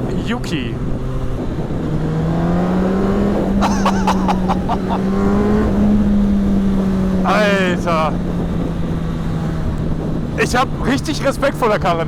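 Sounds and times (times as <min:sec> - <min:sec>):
motorcycle engine running: 0:00.0 - 0:11.0.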